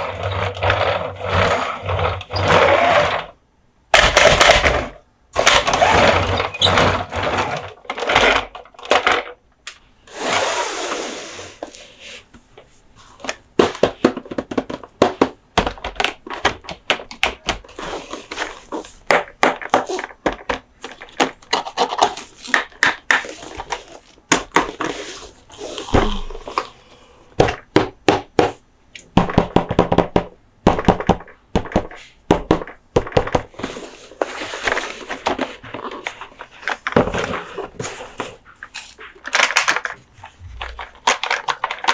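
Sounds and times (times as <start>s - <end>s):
scraping and rubbing on toys: 0.0s - 3.4s, 4.1s - 9.4s, 10.1s - 15.0s, 17.5s - 26.8s, 33.3s - 41.9s.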